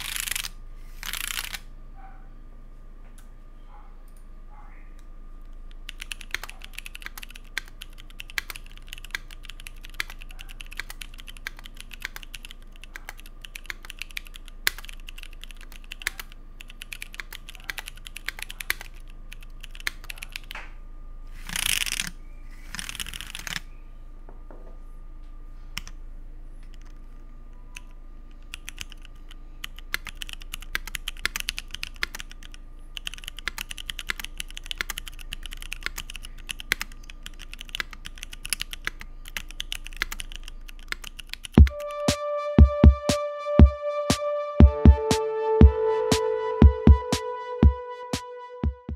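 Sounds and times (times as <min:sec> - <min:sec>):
mechanical keyboard typing: 0:00.0 - 0:01.6, 0:05.7 - 0:20.5, 0:27.8 - 0:41.8.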